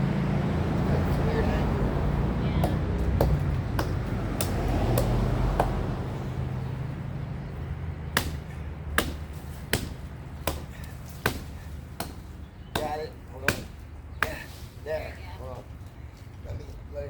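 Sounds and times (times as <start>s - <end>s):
engine idling rumble: 0.0s - 12.8s.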